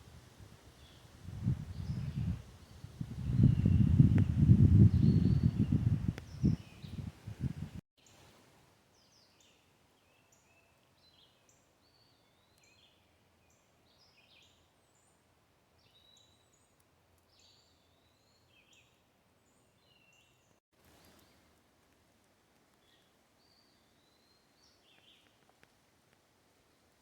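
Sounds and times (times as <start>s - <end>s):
faint low hiss: 0.0s - 18.0s, 19.0s - 27.0s
birds chirping and whistling: 3.2s - 7.1s.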